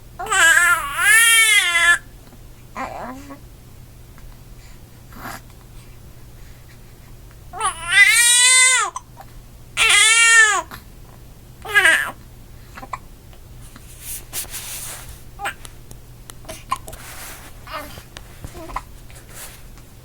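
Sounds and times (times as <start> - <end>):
baby crying: 0.2 - 2.0, 7.6 - 9.0, 9.8 - 10.7, 11.6 - 12.2.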